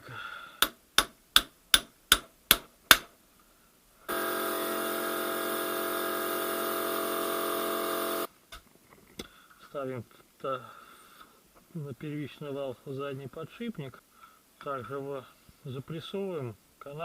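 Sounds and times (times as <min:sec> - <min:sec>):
steady machine hum: 0:04.1 - 0:08.3.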